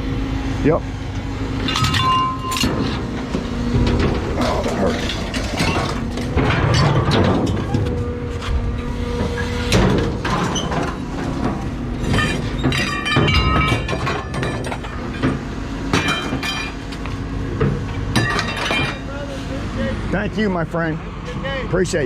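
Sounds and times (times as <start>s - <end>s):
heavy machine engine running: 0.0s - 18.3s
scrap metal clanking and crashing: 1.5s - 19.6s
ringing metal clangs: 1.6s - 3.0s, 12.1s - 15.2s.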